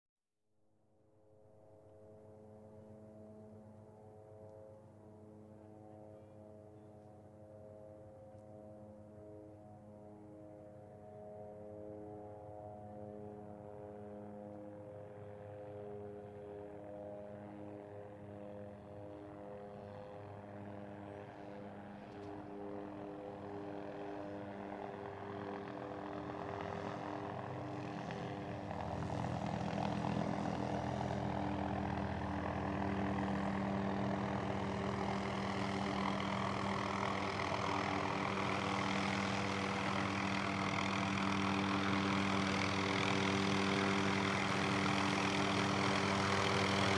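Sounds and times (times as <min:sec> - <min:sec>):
helicopter approaching: 0:10.1 - 0:46.9.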